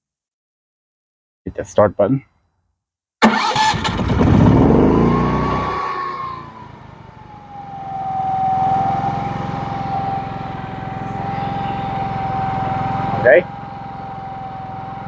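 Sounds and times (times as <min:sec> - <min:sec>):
generator engine starting and running: 0:03.2 - 0:15.0.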